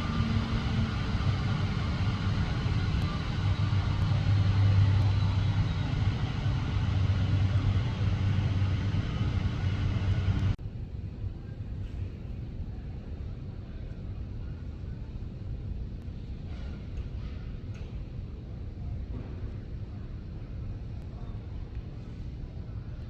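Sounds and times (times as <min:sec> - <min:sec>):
vehicle rumbling in motion: 0:00.0 - 0:13.3.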